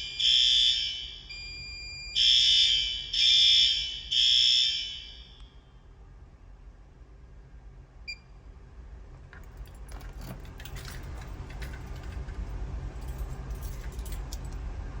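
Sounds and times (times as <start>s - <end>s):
metallic clinks and jingles: 9.4s - 14.6s.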